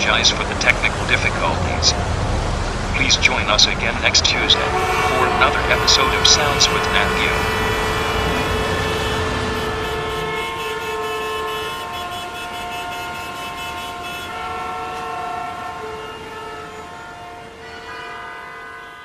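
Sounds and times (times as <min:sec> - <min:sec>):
held chords music: 0:02.8 - 0:11.0.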